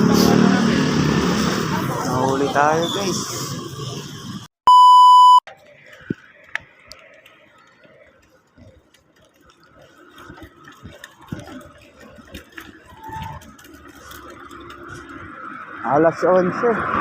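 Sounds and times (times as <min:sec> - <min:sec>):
loud electronic beep: 0:04.7 - 0:05.4.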